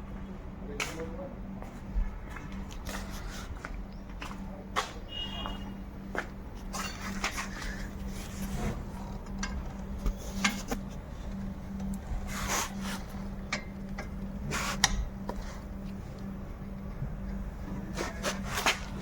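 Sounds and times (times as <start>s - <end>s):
steady low hum: 0.0s - 19.0s
metal parts clicking and scraping: 6.7s - 16.3s.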